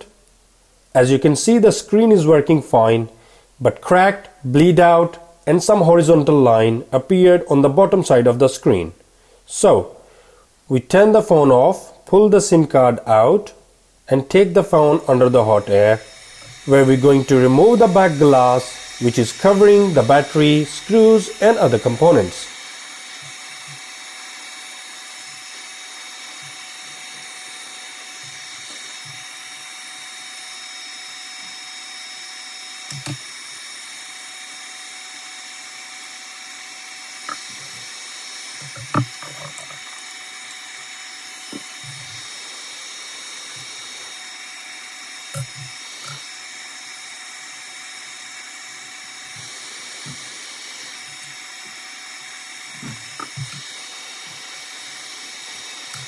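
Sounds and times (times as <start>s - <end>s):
hot air station fan whining: 14.2s - 56.0s
sharp clicks and knocks: 32.9s - 33.2s, 37.2s - 37.9s, 38.6s - 40.6s, 45.3s - 46.2s, 52.8s - 53.7s.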